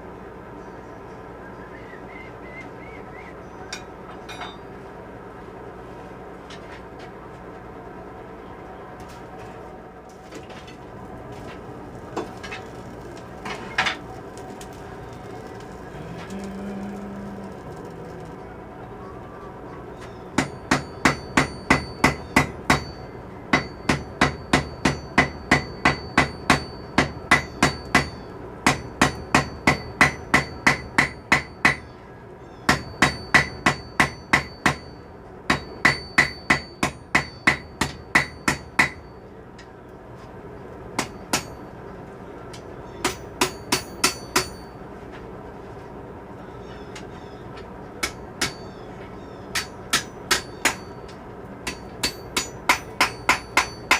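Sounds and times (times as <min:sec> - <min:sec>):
hammer striking steel on anvil: 0:03.7 - 0:04.7, 0:20.4 - 0:31.9, 0:32.7 - 0:39.1, 0:41.0 - 0:41.7, 0:43.0 - 0:44.8, 0:48.0 - 0:48.8, 0:49.5 - 0:53.9.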